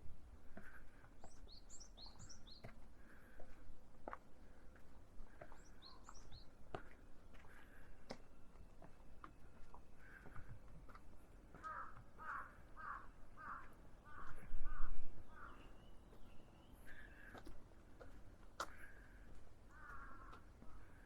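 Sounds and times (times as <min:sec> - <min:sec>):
crow cawing: 0:11.6 - 0:15.7, 0:18.6 - 0:21.0.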